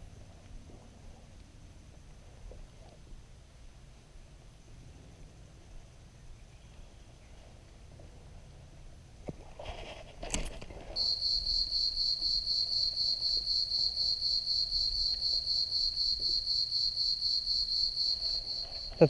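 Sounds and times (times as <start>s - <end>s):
insect trilling: 11.0s - 19.0s.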